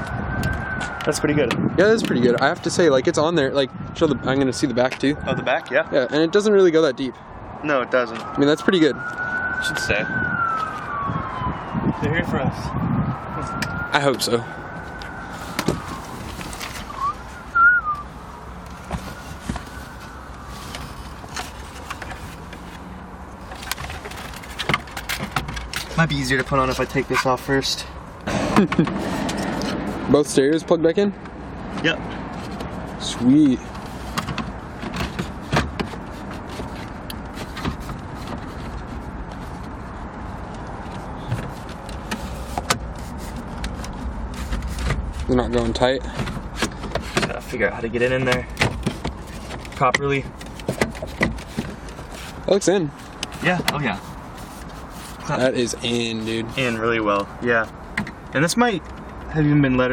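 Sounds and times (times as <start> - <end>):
distant siren wailing: 0.0 - 1.8, 2.6 - 6.8, 7.4 - 21.2
short wavering whistle: 16.9 - 18.1.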